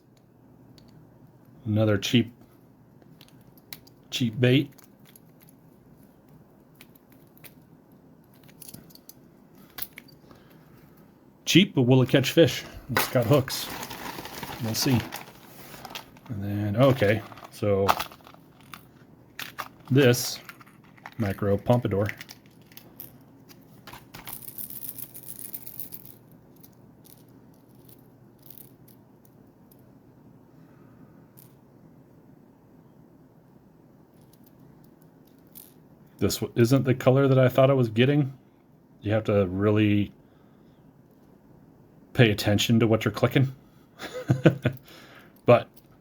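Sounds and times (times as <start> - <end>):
packaging rustling: 12.9 - 23.0.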